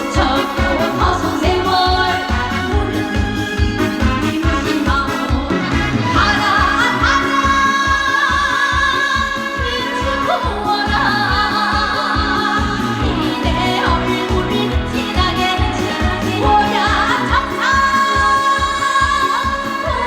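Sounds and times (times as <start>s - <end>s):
backing track with steady beat: 0.0s - 20.0s
woman singing with vibrato: 0.0s - 20.0s.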